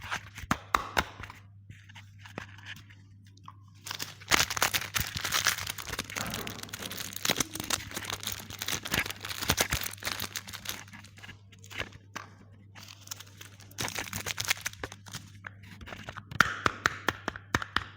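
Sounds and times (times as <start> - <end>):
steady low hum: 1.1 - 16.3
packaging crinkling and crunching: 3.8 - 12.1, 12.8 - 16.2.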